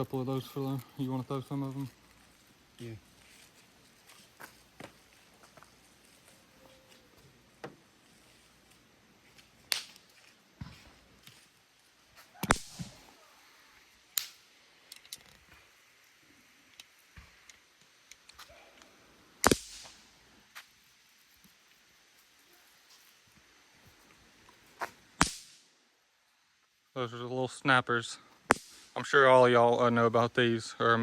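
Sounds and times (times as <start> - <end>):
bang snaps popping: 9.7 - 10.0, 12.4 - 13.0, 14.2 - 14.4, 19.4 - 20.0, 25.2 - 25.7, 28.5 - 29.0.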